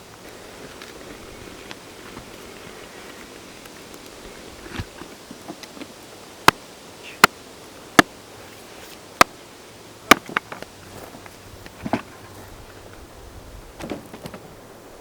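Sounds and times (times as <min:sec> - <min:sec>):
tool striking wood: 0:10.1 - 0:10.5.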